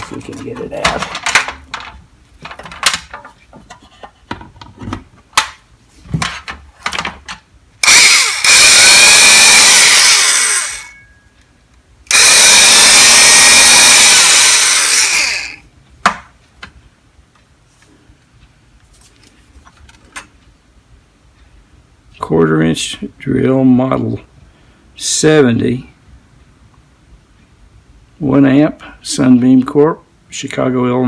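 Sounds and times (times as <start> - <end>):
knocks and rattles of drill: 6.2 - 11.0, 12.1 - 15.6
electric drill motor whine: 7.8 - 11.0, 12.1 - 15.6.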